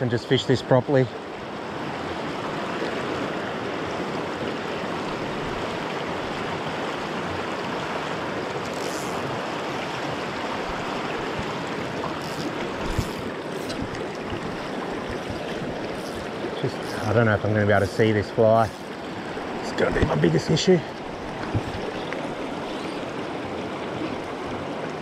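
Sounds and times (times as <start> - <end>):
river water rushing: 0.6 - 25.0.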